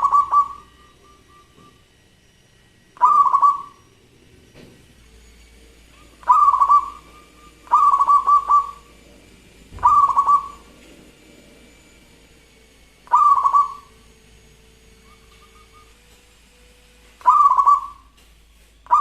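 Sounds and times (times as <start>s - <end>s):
dove cooing: 0.0s - 1.8s, 3.0s - 4.0s, 5.9s - 11.2s, 12.8s - 14.2s, 17.2s - 18.1s.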